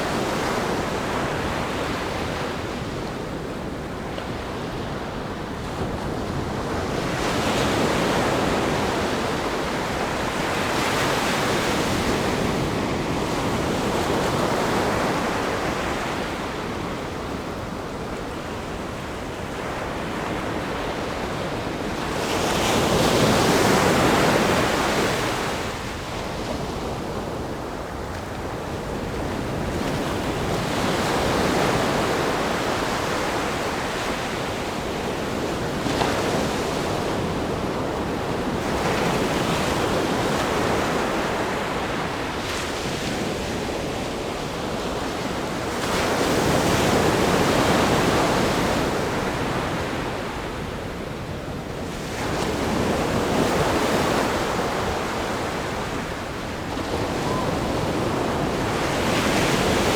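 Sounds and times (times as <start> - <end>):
ocean waves breaking: 52.4 - 59.9.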